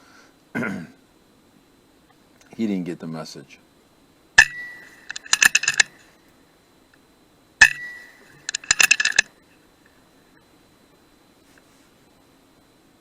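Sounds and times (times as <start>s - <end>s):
metallic clicks: 4.4s - 6.0s, 7.6s - 9.3s
air rifle report: 4.4s - 6.1s, 7.6s - 9.3s.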